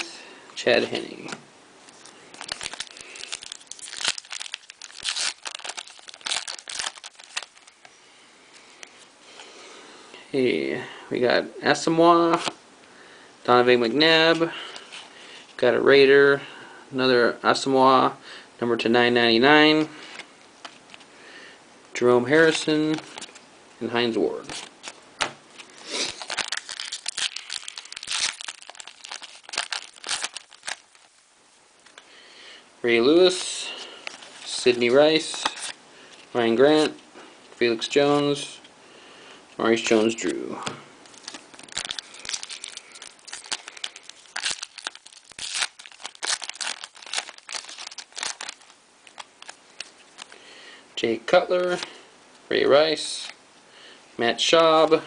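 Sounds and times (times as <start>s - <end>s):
foil wrapper tearing and crinkling: 2.0s - 7.8s, 25.6s - 31.1s, 41.1s - 50.4s.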